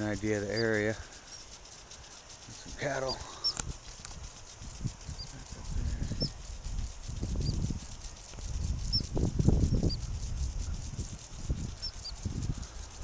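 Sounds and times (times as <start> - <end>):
prairie dog alarm chirps: 0.4 - 4.0, 5.0 - 8.2, 8.8 - 9.2, 11.6 - 12.2
wind on microphone: 3.1 - 13.0.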